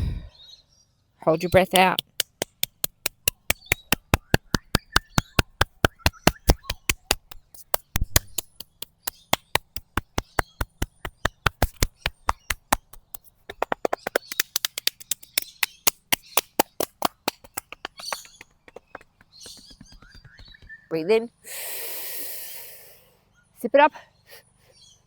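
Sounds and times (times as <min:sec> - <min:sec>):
hands tapping on body: 0:01.6 - 0:20.9.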